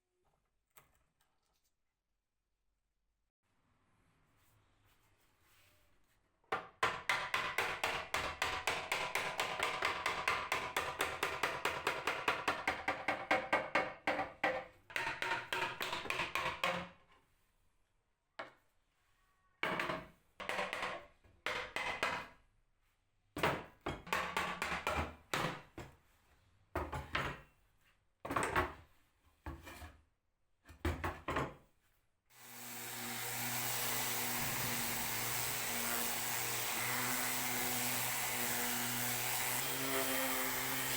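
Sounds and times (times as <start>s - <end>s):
power tool humming: 32.4s - 40.9s.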